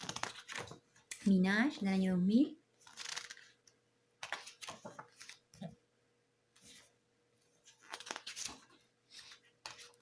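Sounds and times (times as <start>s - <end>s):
paper pages rustling and turning: 0.0s - 1.2s, 2.8s - 3.6s, 4.2s - 5.6s, 6.6s - 7.0s, 7.6s - 10.0s.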